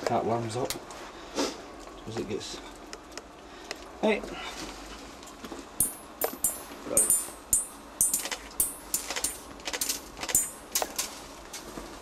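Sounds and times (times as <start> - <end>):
metallic clinks and jingles: 5.8 - 11.1.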